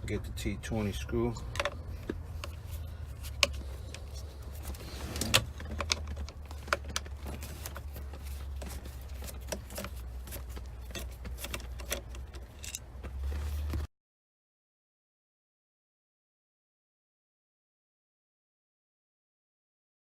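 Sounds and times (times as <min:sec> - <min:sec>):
steady low hum: 0:00.0 - 0:13.9.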